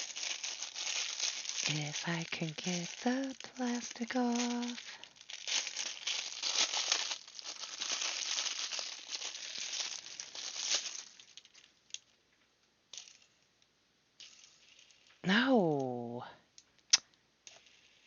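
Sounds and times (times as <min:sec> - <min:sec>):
plastic wrapping crinkling and tearing: 0:00.0 - 0:12.1.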